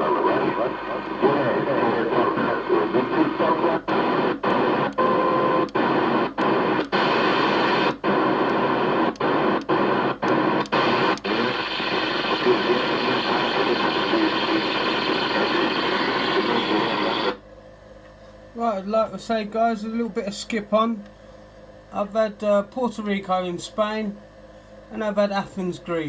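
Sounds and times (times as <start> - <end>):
radio static hiss: 0.0 - 17.4.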